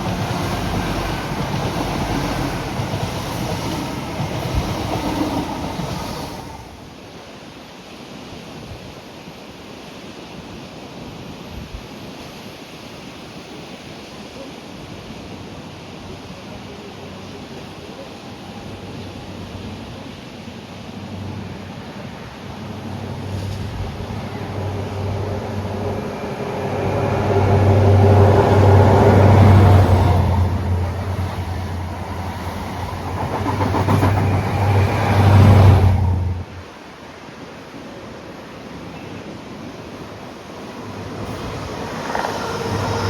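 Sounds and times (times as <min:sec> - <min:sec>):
diesel train engine hum: 0:00.0 - 0:06.9, 0:18.3 - 0:36.8, 0:40.2 - 0:43.0.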